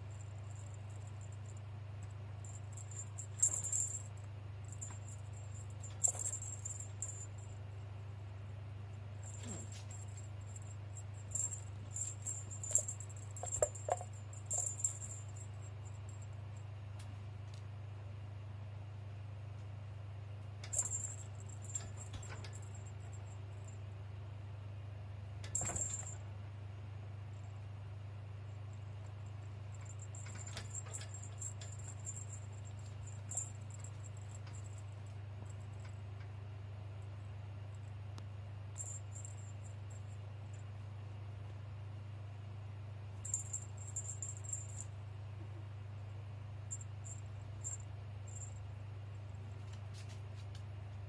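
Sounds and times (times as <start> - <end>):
small bell jingling: 0.0 - 1.6, 2.4 - 7.6, 9.2 - 16.6, 20.7 - 23.8, 25.5 - 26.2, 29.3 - 35.9, 38.7 - 40.6, 43.2 - 44.9, 46.7 - 48.6
steady low hum: 0.0 - 51.0.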